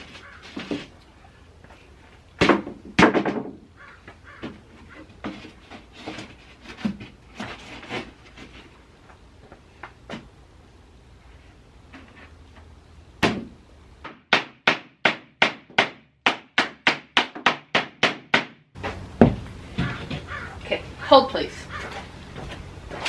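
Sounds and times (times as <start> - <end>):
boards rattling: 0.0 - 1.0, 2.4 - 8.8, 18.8 - 20.6
wooden boards knocking: 2.4 - 7.5, 13.2 - 20.4.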